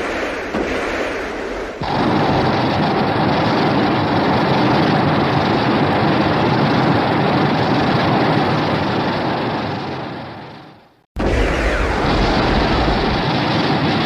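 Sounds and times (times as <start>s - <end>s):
loud rushing blast: 11.2s - 14.0s.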